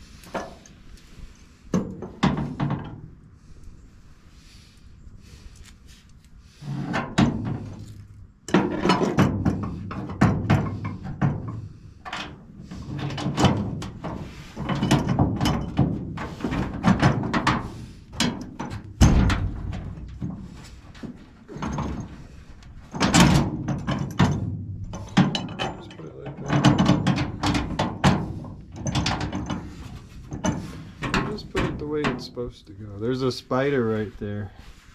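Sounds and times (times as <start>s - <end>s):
metal tools clunking and clattering: 6.9s - 32.3s.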